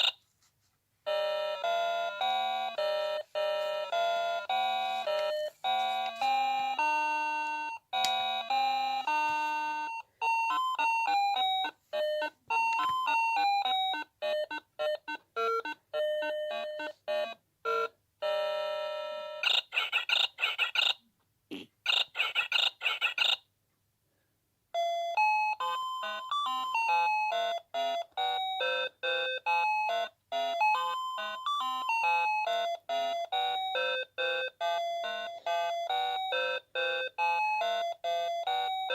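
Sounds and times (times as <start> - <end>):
alarm clock beeping melody: 1.1 - 21.0, 24.8 - 38.9.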